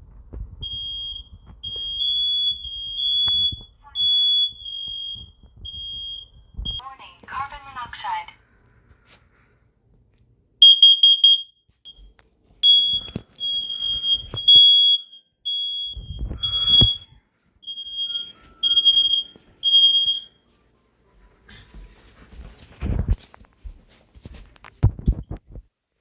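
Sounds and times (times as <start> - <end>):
smoke alarm beeping: 0.6 - 6.8, 10.6 - 20.4.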